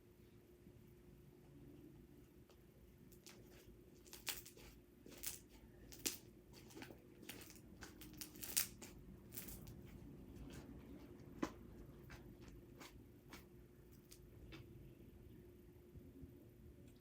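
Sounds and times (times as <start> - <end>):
slime crackling and popping: 4.0 - 9.8.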